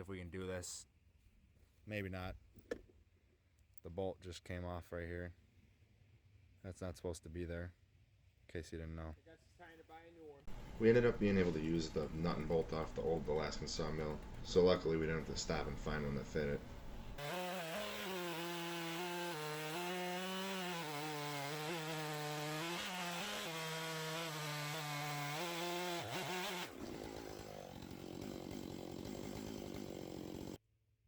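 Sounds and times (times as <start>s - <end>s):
chainsaw cutting log: 10.5s - 30.6s.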